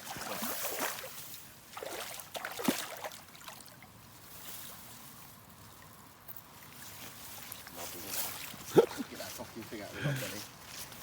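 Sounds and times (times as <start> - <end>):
water splashing: 0.0 - 3.9.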